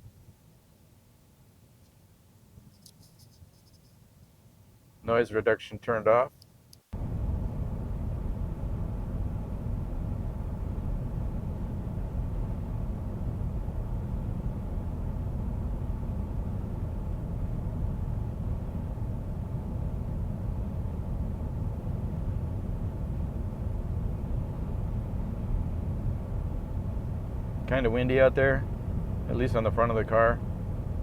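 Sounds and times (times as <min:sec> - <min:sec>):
tyre and engine rumble: 0:07.0 - 0:31.0.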